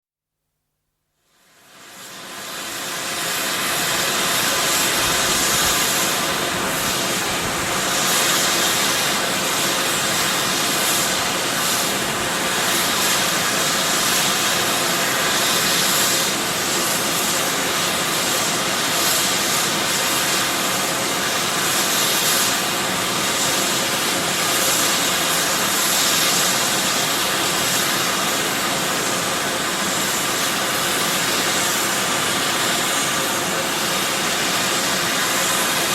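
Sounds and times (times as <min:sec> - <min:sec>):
fumarole venting gas hiss: 0:01.2 - 0:35.9.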